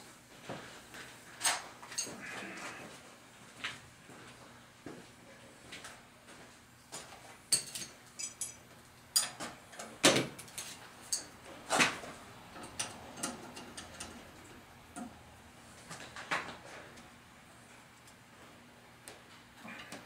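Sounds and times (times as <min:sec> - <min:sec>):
metal bolts and tools clinking: 0:07.5 - 0:08.6, 0:09.2 - 0:11.4.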